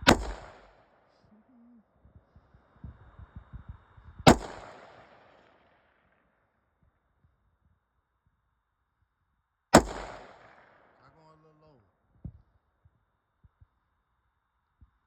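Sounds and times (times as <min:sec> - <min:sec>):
gunshot with ringing tail: 0:00.0 - 0:00.8, 0:04.2 - 0:05.5, 0:09.8 - 0:10.6.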